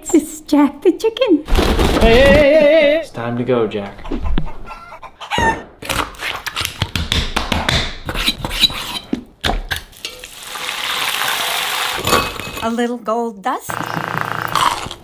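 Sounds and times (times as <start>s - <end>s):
chicken calling: 4.0s - 5.7s.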